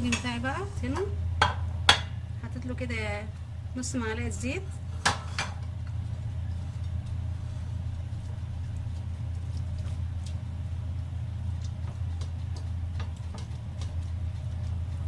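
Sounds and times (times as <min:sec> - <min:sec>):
low hum: 0:00.0 - 0:15.0
faint clicks and taps: 0:11.5 - 0:15.0.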